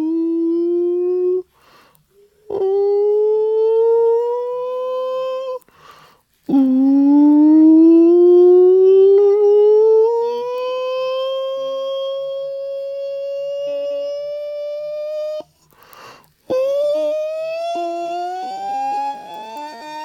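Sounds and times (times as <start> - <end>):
quick breath: 1.5 - 2.1, 5.7 - 6.4, 15.6 - 16.4
person holding rising tones: 16.5 - 20.0.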